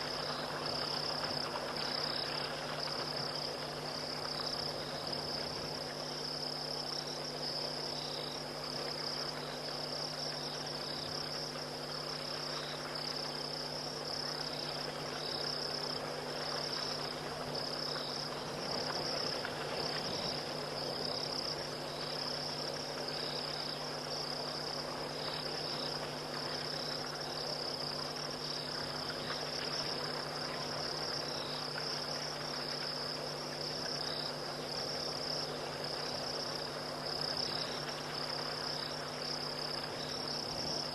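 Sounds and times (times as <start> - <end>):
insect chirps: 0.0 - 40.9.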